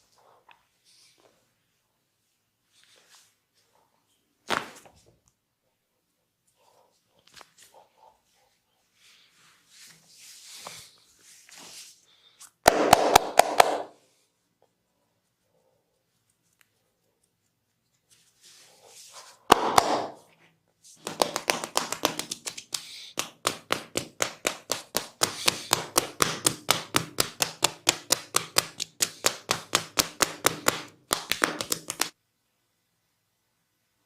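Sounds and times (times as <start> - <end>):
hands slapping on body: 12.7 - 14.0, 19.5 - 20.2, 21.0 - 32.2.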